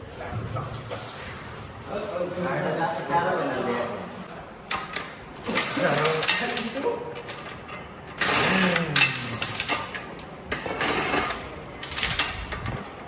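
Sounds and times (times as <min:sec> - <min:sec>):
hand tools clicking and rattling: 0:04.7 - 0:12.8.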